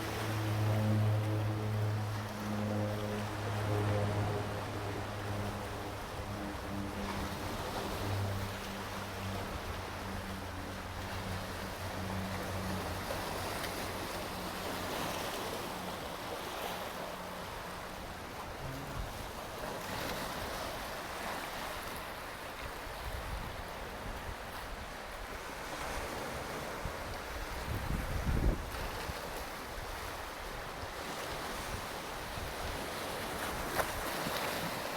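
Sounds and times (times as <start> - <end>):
low steady hum: 0.0 - 22.1
waves washing onto beach: 0.0 - 34.9.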